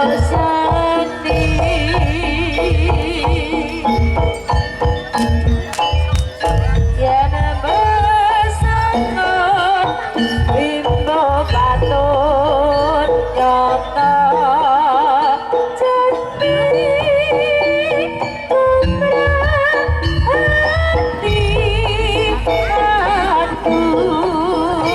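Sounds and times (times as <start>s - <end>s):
drums: 0.0s - 13.0s, 18.5s - 23.5s
wavering vibrato melody: 0.0s - 24.9s.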